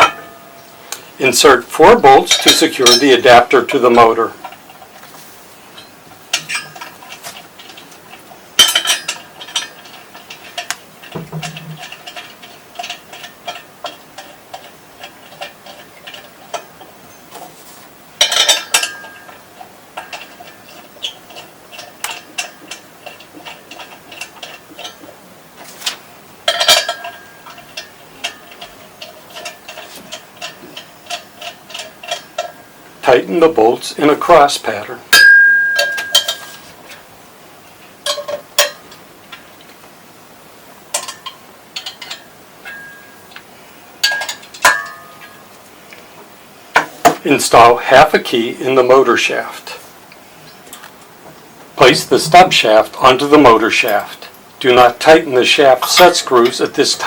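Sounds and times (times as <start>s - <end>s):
loud metal clanks: 0.0s - 0.8s, 18.2s - 19.4s, 35.2s - 36.6s, 44.0s - 45.4s
bolts and tools clinking on metal: 0.0s - 1.1s, 1.9s - 4.6s, 5.8s - 17.5s, 18.2s - 25.1s, 25.8s - 36.8s, 38.0s - 39.8s, 40.9s - 43.4s, 44.0s - 45.5s, 51.8s - 57.0s.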